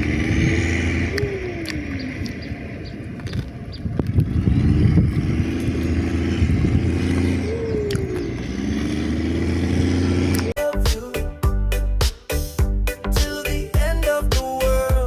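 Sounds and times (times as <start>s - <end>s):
vehicle engine running: 0.0s - 10.6s.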